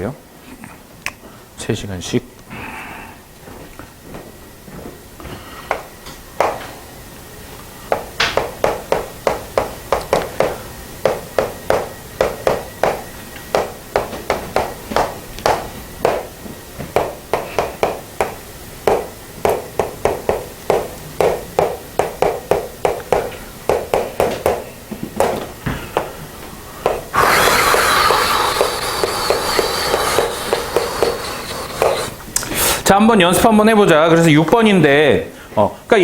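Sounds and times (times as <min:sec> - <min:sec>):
steady hiss: 0:05.2 - 0:33.0.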